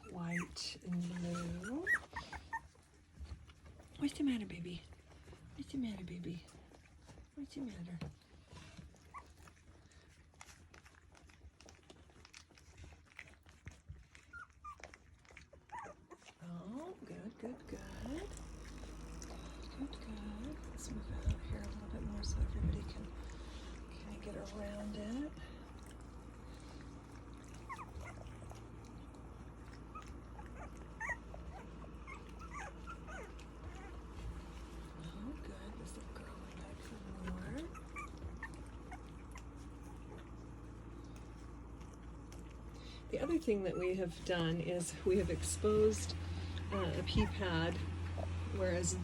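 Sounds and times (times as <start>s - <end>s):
puppies squeaking: 0.0s - 3.0s, 8.9s - 9.7s, 12.8s - 16.4s, 27.2s - 35.1s, 36.8s - 41.0s
puppies whimpering and squeaking: 0.0s - 4.2s, 6.4s - 49.0s.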